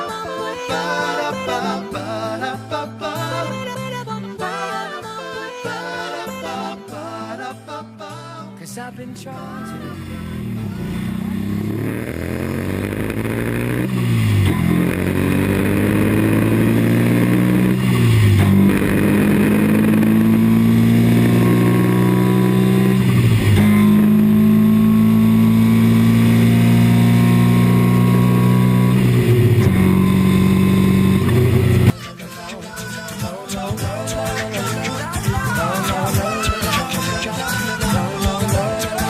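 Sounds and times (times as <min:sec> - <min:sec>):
race car engine accelerating: 0:09.6 - 0:32.0.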